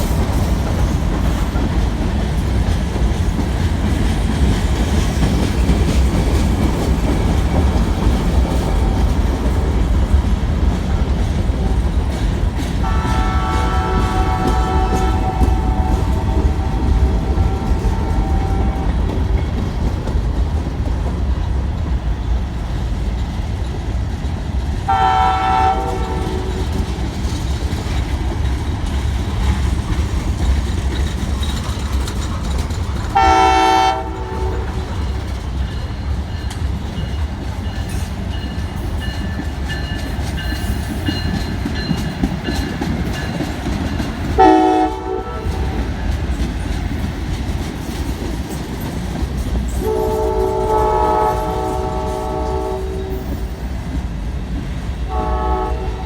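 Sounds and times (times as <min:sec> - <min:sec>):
freight train wheels rumbling: 0:00.0 - 0:56.0
train horn blasts: 0:12.8 - 0:19.0, 0:24.9 - 0:26.8, 0:33.1 - 0:35.0, 0:44.4 - 0:45.8, 0:49.8 - 0:53.6, 0:55.1 - 0:56.0.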